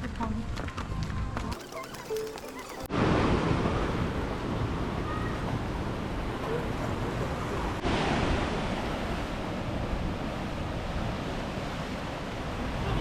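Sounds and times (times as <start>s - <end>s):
ocean surf rushing: 6.0s - 13.0s.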